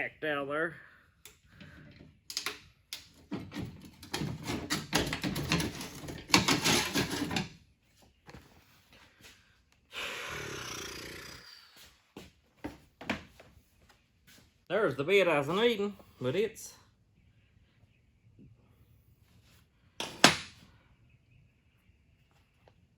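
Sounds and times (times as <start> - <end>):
metal tools clattering: 3.3 - 7.6.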